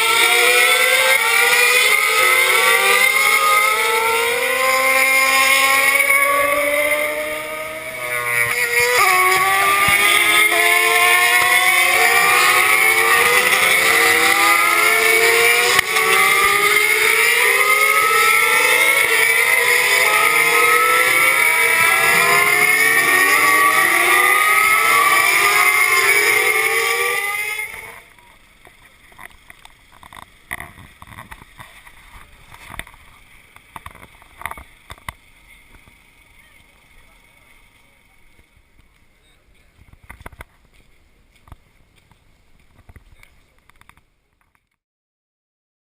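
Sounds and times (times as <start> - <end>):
race car engines accelerating: 0.0 - 31.0.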